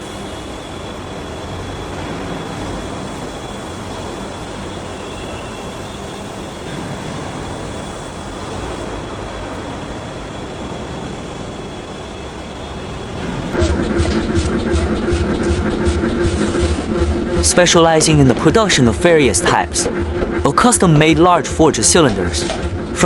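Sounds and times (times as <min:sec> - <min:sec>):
faint high whine: 0:00.0 - 0:13.7
industrial machinery rumble and hiss: 0:00.0 - 0:23.0.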